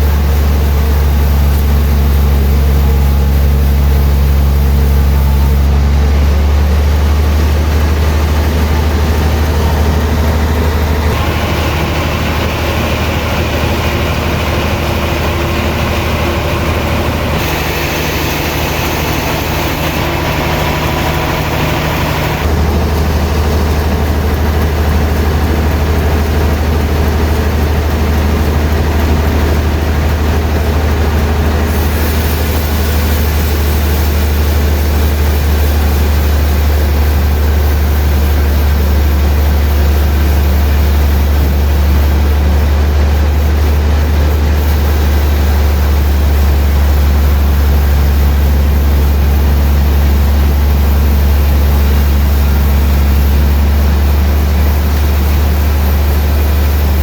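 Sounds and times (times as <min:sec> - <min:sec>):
high hiss: 0:00.0 - 0:05.8, 0:10.6 - 0:22.6, 0:31.7 - 0:57.0
sawmill machinery engine drone: 0:00.0 - 0:57.0.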